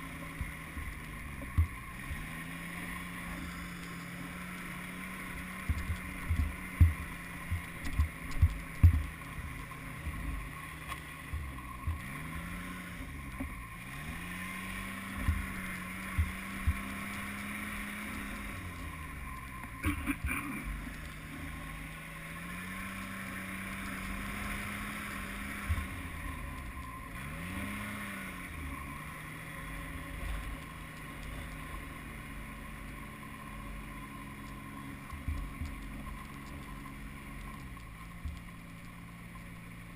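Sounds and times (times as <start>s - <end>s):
snowmobile engine: 0.0s - 39.9s
sharp low thumps: 0.4s - 2.0s, 5.3s - 10.6s, 11.2s - 12.4s, 15.0s - 17.1s.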